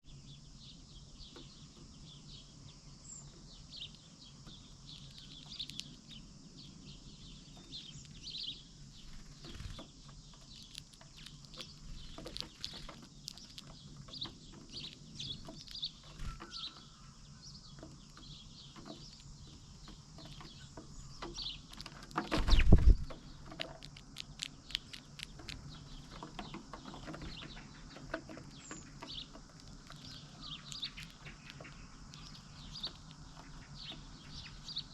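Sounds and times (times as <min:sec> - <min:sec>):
birds chirping: 0:00.1 - 0:34.9
small clicks: 0:09.2 - 0:16.8, 0:17.8 - 0:27.6, 0:28.2 - 0:34.1.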